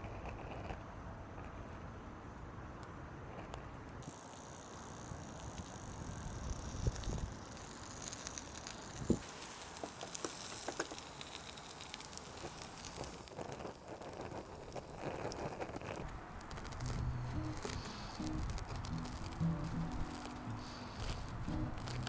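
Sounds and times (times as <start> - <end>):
soft steady hiss: 1.6 - 22.0
wood fire crackling: 6.2 - 22.0
fire pops and clicks: 6.6 - 22.0.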